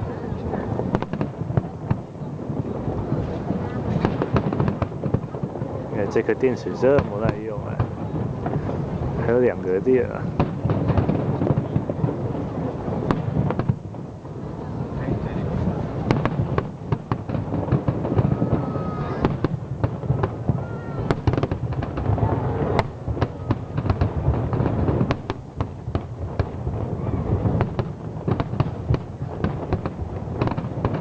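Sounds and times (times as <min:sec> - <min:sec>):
fireworks bangs and crackles: 0:00.0 - 0:31.0
low rumble of booms: 0:00.0 - 0:31.0.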